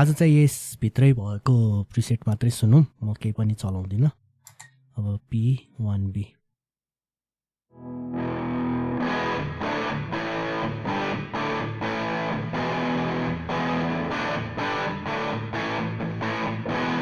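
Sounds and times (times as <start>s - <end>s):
distorted electric guitar chords: 7.7s - 17.0s.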